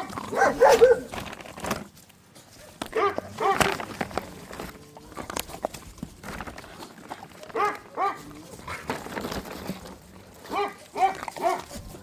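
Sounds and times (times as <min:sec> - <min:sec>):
dog barking: 0:00.0 - 0:01.1, 0:02.9 - 0:03.6, 0:07.6 - 0:08.2, 0:10.5 - 0:11.7.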